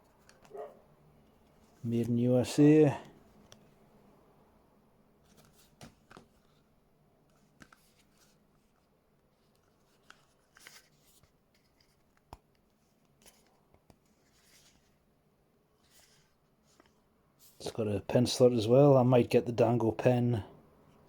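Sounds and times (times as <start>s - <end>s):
wallet being handled: 0.0s - 0.8s, 5.2s - 15.1s.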